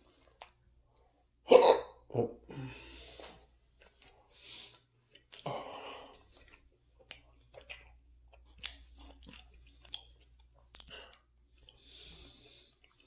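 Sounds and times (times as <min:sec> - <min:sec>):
chewing food with crunches: 0:03.7 - 0:13.0.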